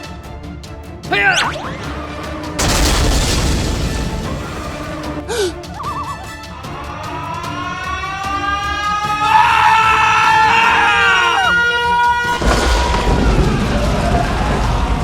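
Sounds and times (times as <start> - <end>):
background music: 0.0 - 15.0
boom sound effect: 2.6 - 5.3.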